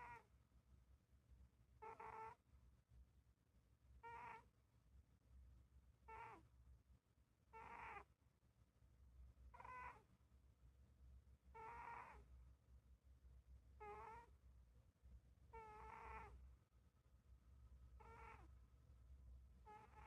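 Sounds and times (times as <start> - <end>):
cat snoring squeakily: 0.0 - 0.2, 1.8 - 2.4, 4.0 - 4.5, 6.1 - 6.4, 7.5 - 8.1, 9.5 - 10.0, 11.5 - 12.2, 13.8 - 14.3, 15.5 - 16.4, 18.0 - 18.5, 19.7 - 20.0.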